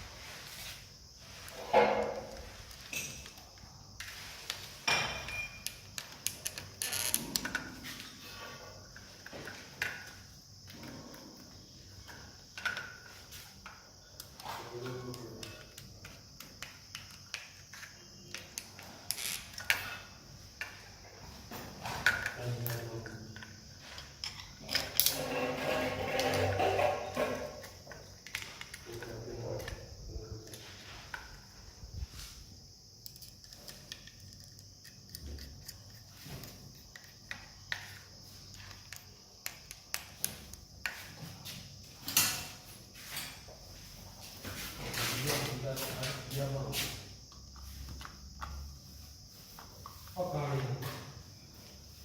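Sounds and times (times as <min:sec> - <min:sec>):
steady high hiss: 0:00.0 - 0:24.1.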